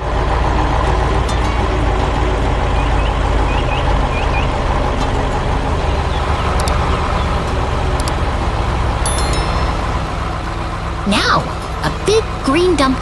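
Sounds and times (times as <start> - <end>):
heavy truck engine running: 0.0 - 13.0
short high chirps: 9.1 - 10.6.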